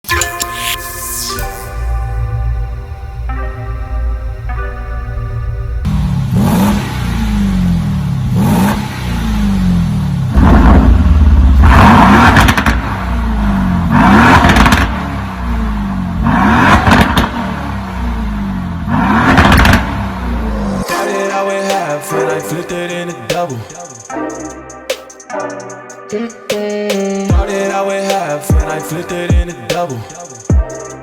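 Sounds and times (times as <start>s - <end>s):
car engine revving: 2.2s - 20.9s.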